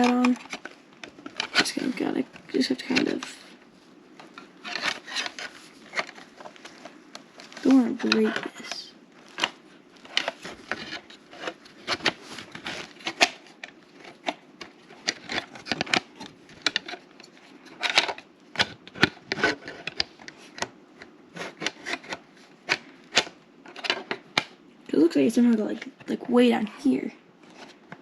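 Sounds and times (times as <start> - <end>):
plastic parts clicking and rubbing: 0.0 - 24.6, 27.4 - 28.0.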